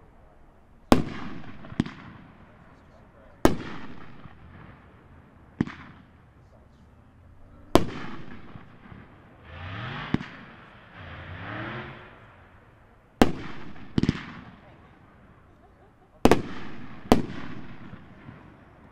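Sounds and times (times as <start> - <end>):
firework bangs: 0.9 - 6.6, 7.7 - 18.9.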